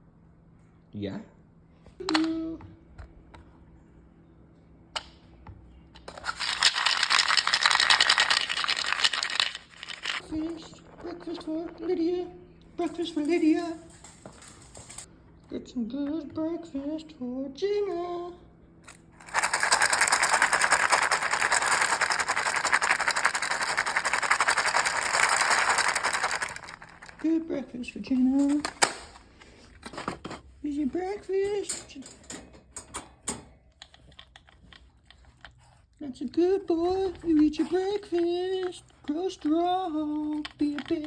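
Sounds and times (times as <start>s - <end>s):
dry kibble rattling into bowl: 6.0s - 12.0s, 12.8s - 15.1s, 18.9s - 27.5s, 36.7s - 41.0s.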